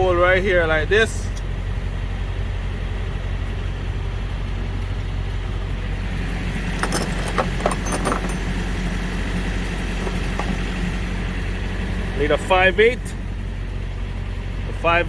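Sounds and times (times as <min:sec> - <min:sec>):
engine idling: 0:00.0 - 0:15.0
hand tools clinking on metal: 0:06.6 - 0:08.9, 0:09.8 - 0:10.8.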